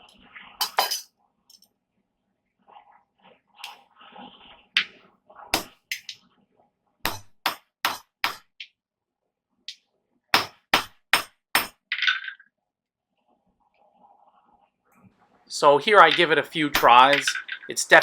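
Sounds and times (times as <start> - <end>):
hammer striking hot steel: 5.6 - 6.2, 7.1 - 8.5, 10.4 - 11.7.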